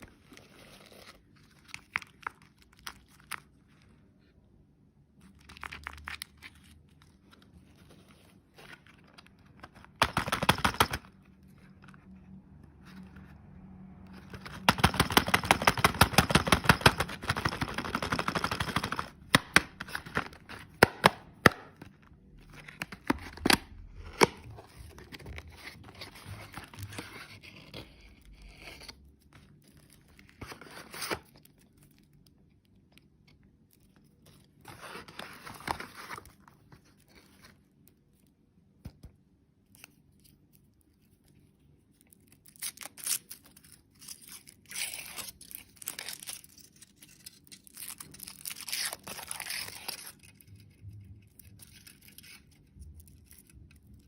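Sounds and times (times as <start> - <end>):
plastic wrapper tearing and crinkling: 0.0 - 3.9, 5.2 - 7.8, 42.0 - 54.0.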